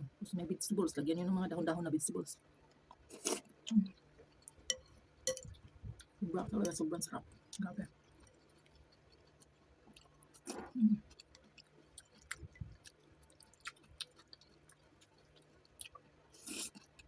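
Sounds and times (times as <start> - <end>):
person chewing noodle soup: 2.7 - 6.2, 7.3 - 17.0.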